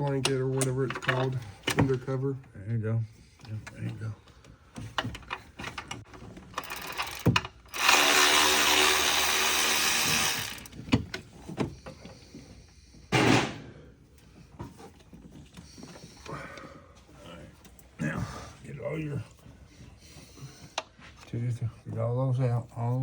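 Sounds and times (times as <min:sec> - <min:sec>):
handheld power tool running: 0:06.4 - 0:10.8.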